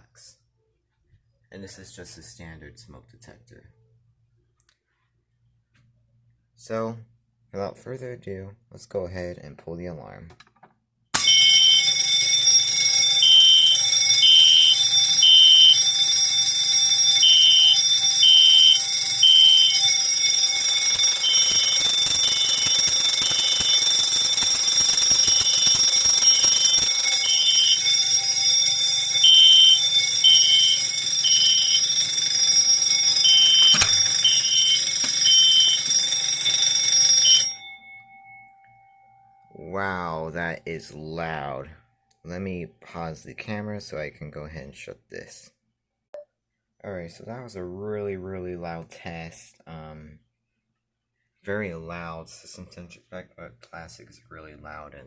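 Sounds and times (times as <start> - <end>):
alarm horn beeping: 11.2 - 37.6
fire alarm bell ringing: 11.2 - 39.7.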